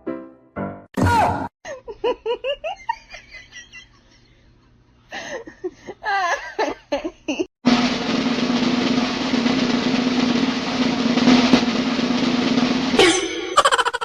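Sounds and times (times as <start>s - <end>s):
person laughing: 1.6s - 4.3s, 5.2s - 7.5s, 13.4s - 14.0s.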